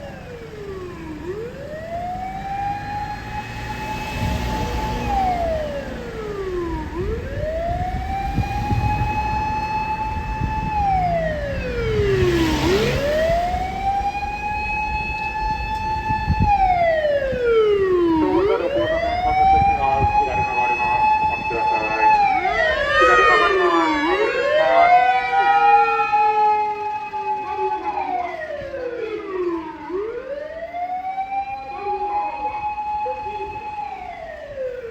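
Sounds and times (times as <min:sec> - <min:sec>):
mechanical siren wailing: 0:00.0 - 0:34.9.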